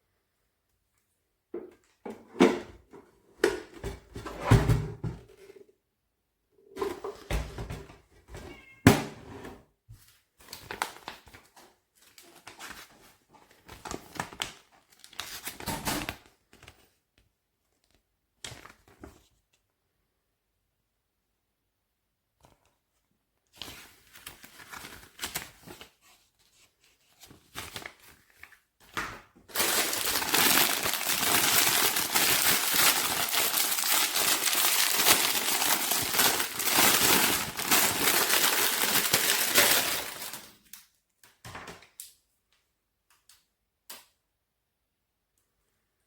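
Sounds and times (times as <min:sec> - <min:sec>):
crinkling handling noise: 0:23.5 - 0:40.8.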